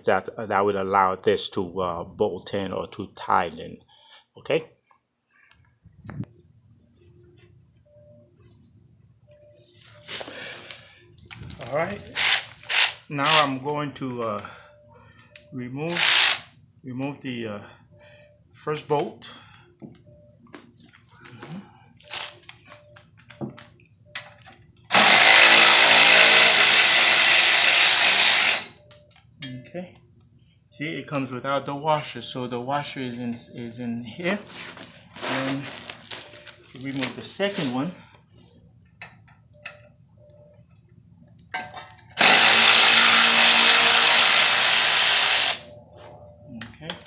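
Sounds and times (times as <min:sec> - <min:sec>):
electric ratchet running: 0:12.1 - 0:13.6, 0:15.9 - 0:16.5, 0:24.9 - 0:28.8, 0:42.2 - 0:45.7
power tool spinning bolt: 0:12.2 - 0:13.6, 0:15.9 - 0:16.5, 0:24.9 - 0:28.7, 0:42.2 - 0:45.7.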